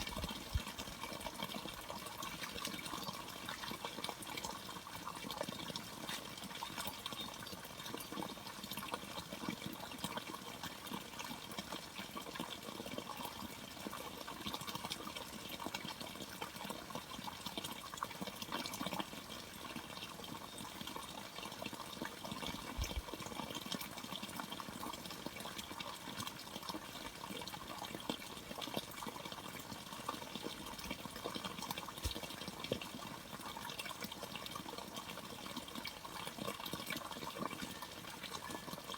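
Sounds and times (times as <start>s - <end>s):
water running and splashing: 27.9s - 38.9s.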